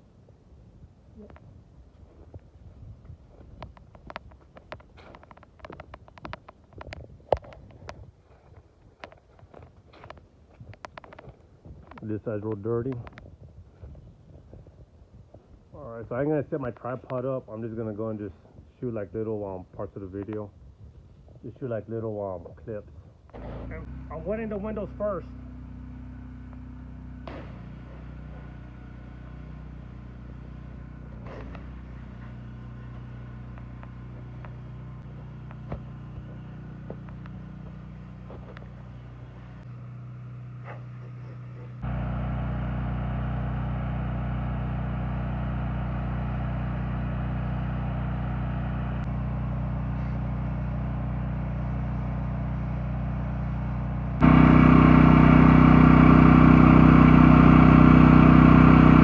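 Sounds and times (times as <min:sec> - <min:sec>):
pressure washer engine running: 0:23.7 - 0:40.5, 0:41.8 - 0:59.0.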